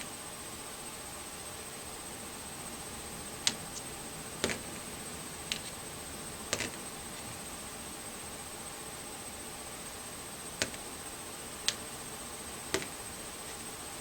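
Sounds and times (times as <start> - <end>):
pointer tapping on wall chart: 3.4 - 4.7, 6.5 - 6.8, 10.6 - 10.9, 11.6 - 11.9, 12.7 - 13.0.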